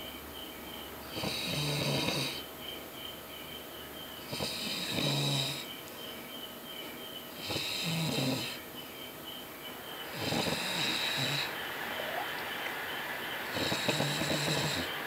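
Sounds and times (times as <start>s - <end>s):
man snoring loudly: 1.2s - 2.4s, 4.3s - 5.6s, 7.4s - 8.6s, 10.1s - 11.6s, 13.5s - 14.9s.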